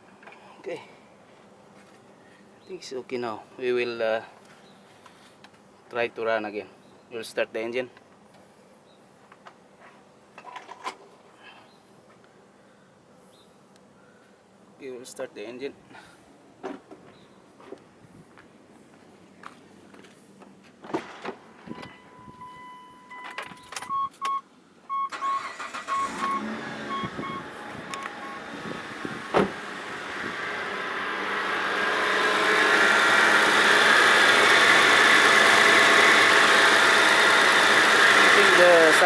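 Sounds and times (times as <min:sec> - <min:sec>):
short beeps: 0:21.8 - 0:28.4
car engine starting and running: 0:23.0 - 0:39.0
clicks: 0:27.9 - 0:28.2.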